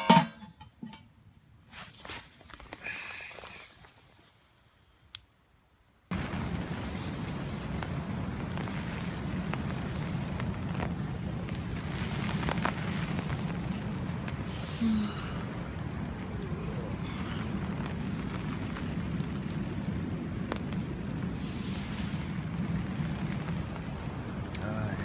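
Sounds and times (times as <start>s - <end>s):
wind buffeting microphone: 6.1s - 25.0s.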